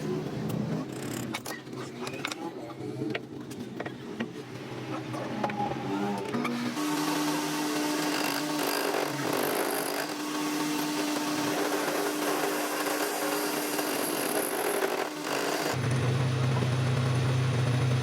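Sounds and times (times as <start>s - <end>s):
power tool whining: 6.2s - 18.0s.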